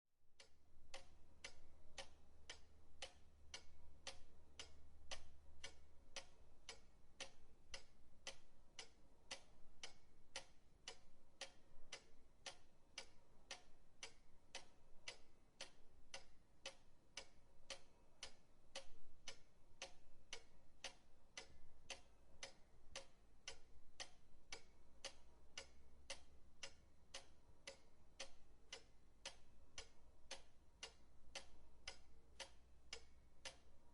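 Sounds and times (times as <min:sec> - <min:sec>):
pendulum clock ticking: 0:00.4 - 0:33.9.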